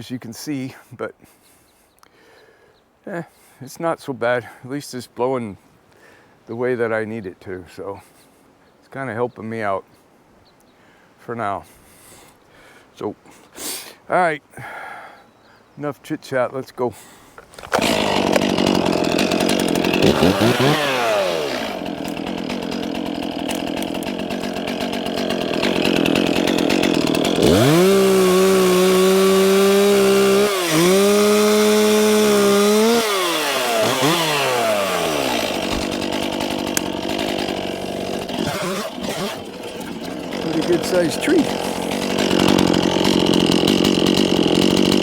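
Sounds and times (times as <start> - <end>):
chainsaw revving: 17.4 - 45.0.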